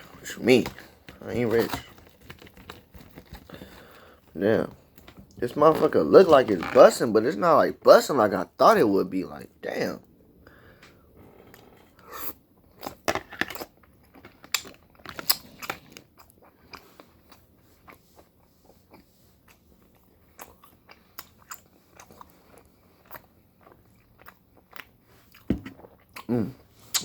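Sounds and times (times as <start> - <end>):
person chewing food: 11.9 - 27.0.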